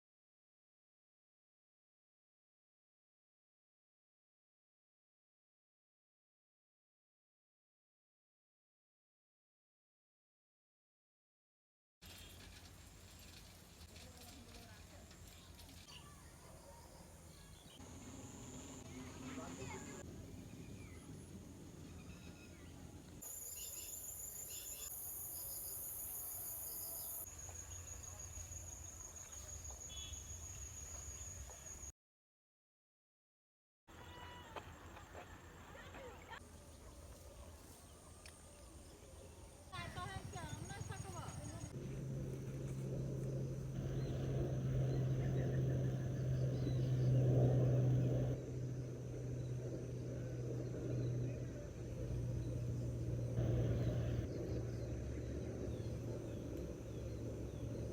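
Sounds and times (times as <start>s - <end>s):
faint bird chirps: 21.8s - 31.9s
insects trilling: 23.2s - 31.9s
low rumbling background noise: 38.8s - 57.9s.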